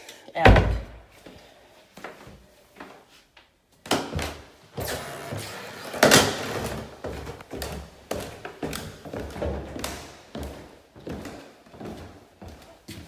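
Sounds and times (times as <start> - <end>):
footsteps thudding: 4.8 - 9.4.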